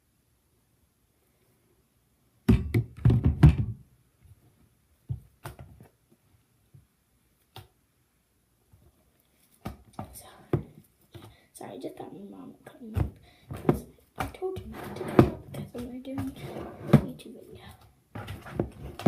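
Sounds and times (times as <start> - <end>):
dull thumps and knocks: 2.5 - 3.8, 13.0 - 17.2.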